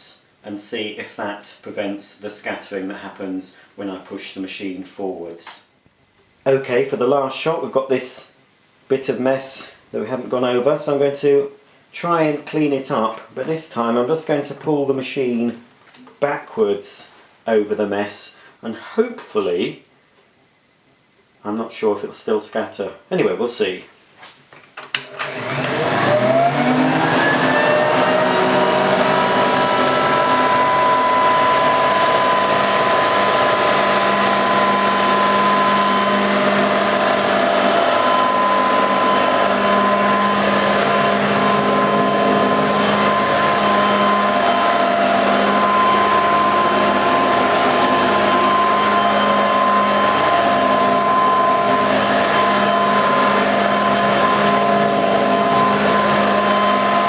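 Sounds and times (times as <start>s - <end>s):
vacuum cleaner motor whining: 25.0s - 57.0s.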